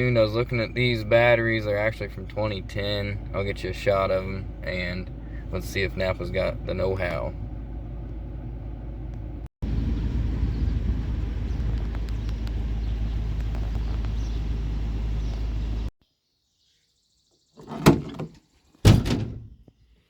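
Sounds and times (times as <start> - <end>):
low vehicle rumble: 0.0 - 15.9.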